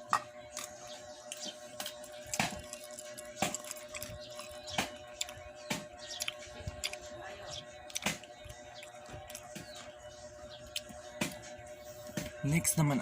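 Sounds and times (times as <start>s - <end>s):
person chewing with mouth smacks: 1.3s - 7.1s, 7.8s - 9.8s.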